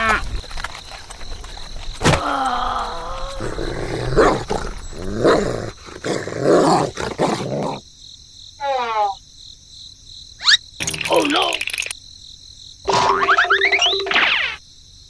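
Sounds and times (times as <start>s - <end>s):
animal growls and roars: 2.0s - 7.8s.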